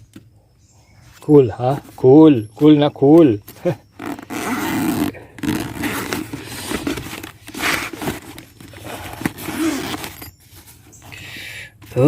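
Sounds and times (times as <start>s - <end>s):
packaging crinkling and rustling: 3.9s - 11.1s.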